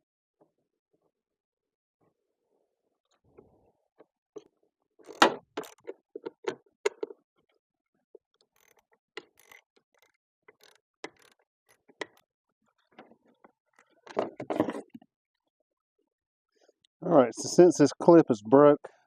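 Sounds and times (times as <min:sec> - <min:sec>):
plastic and metal parts clicking: 0:04.4 - 0:07.2, 0:08.3 - 0:15.0.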